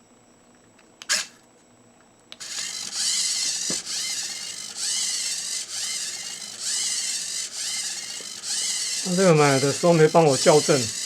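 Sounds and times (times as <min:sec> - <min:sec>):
servos whirring: 0:02.4 - 0:11.0.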